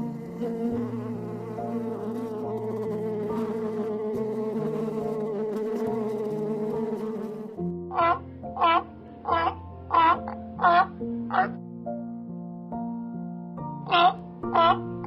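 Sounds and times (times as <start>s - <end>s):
flying insect buzzing: 0.0s - 11.5s.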